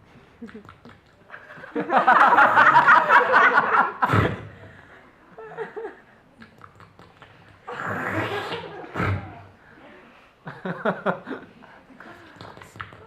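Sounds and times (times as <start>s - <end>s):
group of people laughing: 1.3s - 4.4s, 5.3s - 6.1s, 7.8s - 9.5s, 10.4s - 11.6s.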